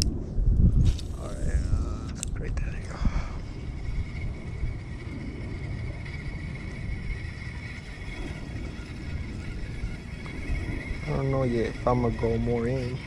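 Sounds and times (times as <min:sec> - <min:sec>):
wind rumbling on microphone: 0:00.0 - 0:13.0
faint high-pitched drone: 0:01.2 - 0:13.0.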